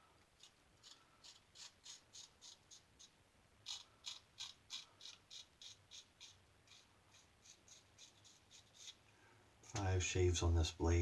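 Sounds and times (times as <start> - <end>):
razor scraping stubble: 0.8 - 9.0.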